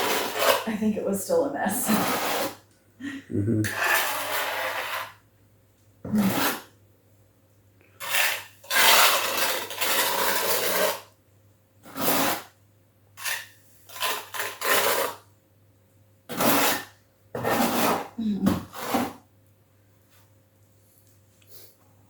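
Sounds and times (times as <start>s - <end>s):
scraping on tile: 0.0s - 2.7s, 3.6s - 5.2s, 6.0s - 6.8s, 8.0s - 11.1s, 11.8s - 12.6s, 13.2s - 15.3s, 16.3s - 19.3s.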